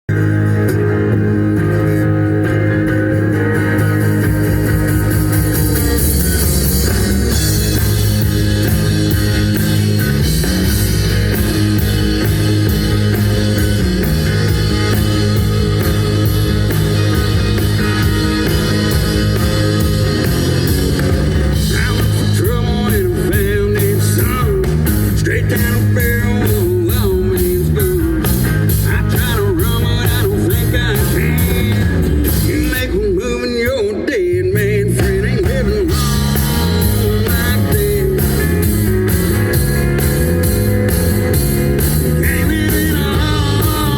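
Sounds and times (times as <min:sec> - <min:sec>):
rock band playing: 0:00.1 - 0:43.9
person singing: 0:21.5 - 0:38.9, 0:40.3 - 0:43.9.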